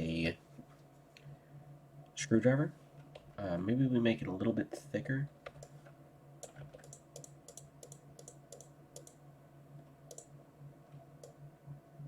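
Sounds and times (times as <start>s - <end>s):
low electrical hum: 0.0s - 12.0s
computer mouse clicks: 5.4s - 5.8s, 6.4s - 9.2s, 10.1s - 10.3s, 11.2s - 11.4s.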